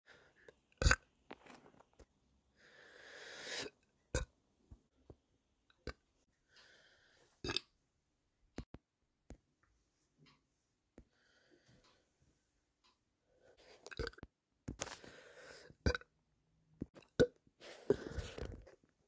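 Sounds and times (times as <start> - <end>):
person breathing out hard: 2.6 - 3.7
throat clicks: 7.4 - 7.8.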